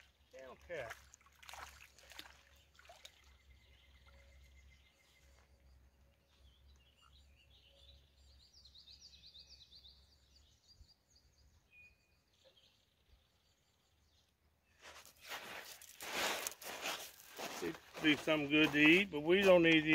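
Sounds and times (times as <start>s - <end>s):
faint bird chirping: 2.0s - 15.8s.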